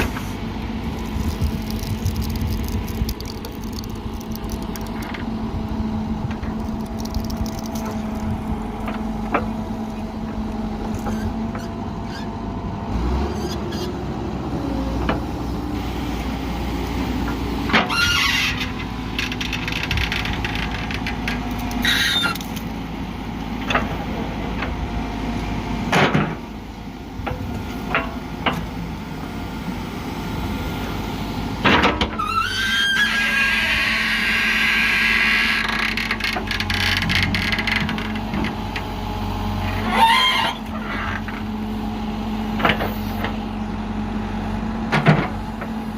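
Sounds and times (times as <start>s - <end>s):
diesel engine running: 0.0s - 45.9s
metal on metal squeals: 17.8s - 18.7s, 21.8s - 22.4s, 32.2s - 35.9s, 39.7s - 41.2s.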